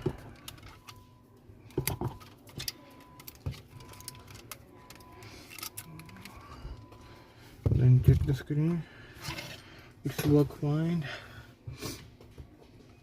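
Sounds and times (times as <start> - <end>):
faint steady tone: 0.0 - 11.6.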